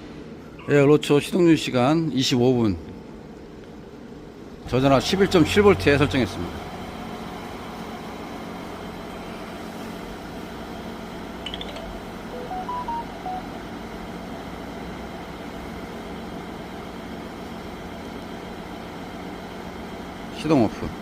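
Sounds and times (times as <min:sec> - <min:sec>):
electronic beeps: 0:11.5 - 0:13.5.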